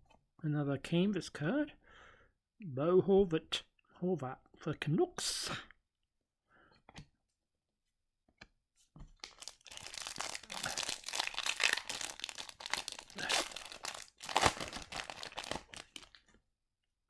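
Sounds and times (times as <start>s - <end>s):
foil wrapper crinkling and tearing: 9.2s - 16.2s.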